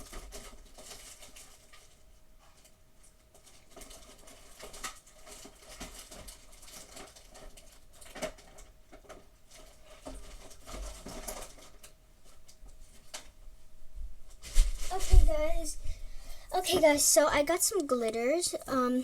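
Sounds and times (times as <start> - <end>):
clicks and crackles of handling: 0.0 - 13.4
faint steady hum: 0.0 - 19.0.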